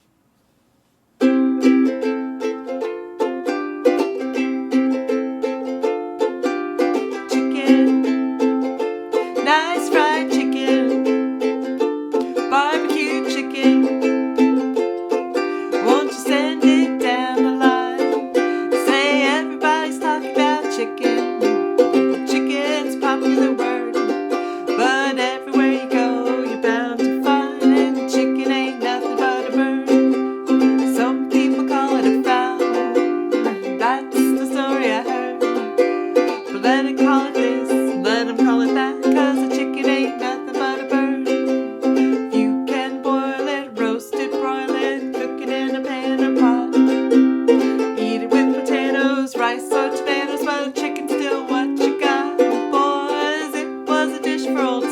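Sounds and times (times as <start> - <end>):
ukulele strumming chords: 1.2 - 54.9.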